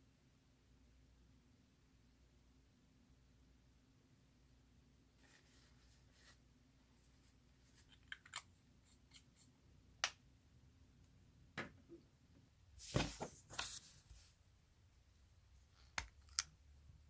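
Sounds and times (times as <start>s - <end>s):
plastic packaging rustling: 12.8s - 14.3s.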